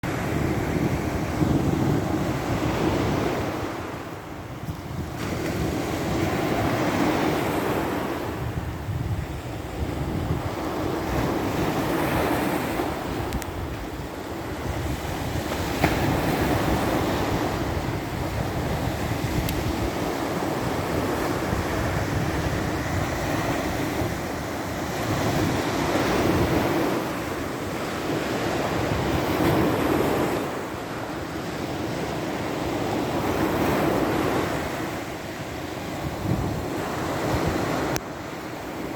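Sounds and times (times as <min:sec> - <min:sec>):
waves breaking on shore: 0:00.0 - 0:38.9
wind buffeting microphone: 0:00.0 - 0:38.9.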